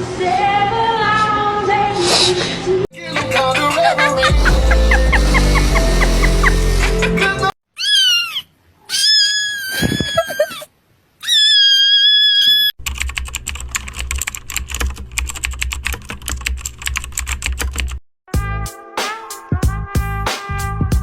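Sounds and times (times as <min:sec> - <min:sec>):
high-pitched cat meows: 0:07.8 - 0:12.7
rapid keyboard typing: 0:12.8 - 0:18.0.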